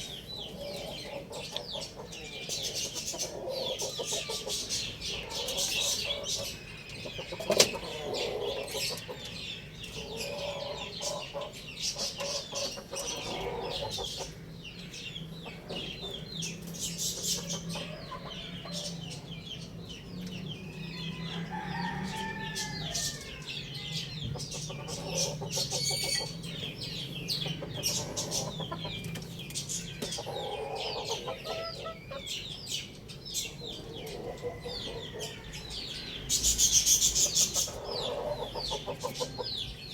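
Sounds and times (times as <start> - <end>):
chickens clucking: 0.0 - 39.9
small birds chirping: 0.0 - 39.9
rooster crowing: 20.8 - 24.0, 34.0 - 36.1.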